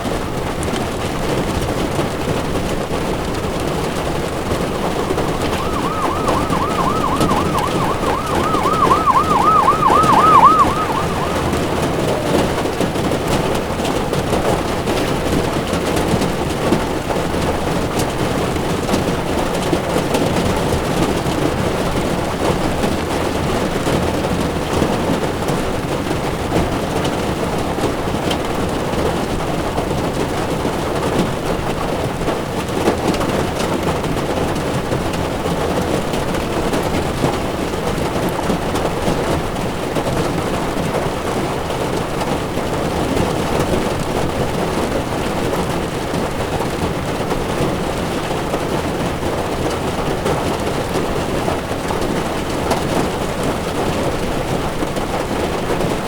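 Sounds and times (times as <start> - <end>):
tyres on wet road: 2.9 - 13.0
siren wailing: 4.1 - 13.0.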